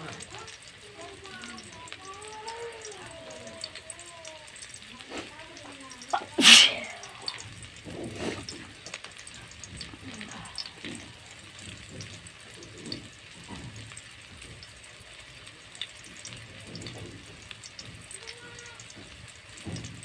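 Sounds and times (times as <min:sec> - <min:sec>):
steady hiss: 0:00.0 - 0:11.7
person sneezing: 0:06.2 - 0:07.0.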